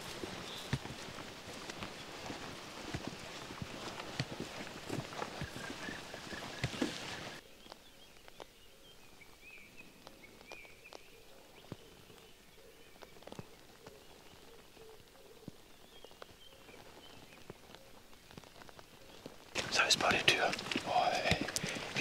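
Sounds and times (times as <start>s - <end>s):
footsteps through vegetation: 0.0s - 22.0s
faint bird call: 5.0s - 7.6s.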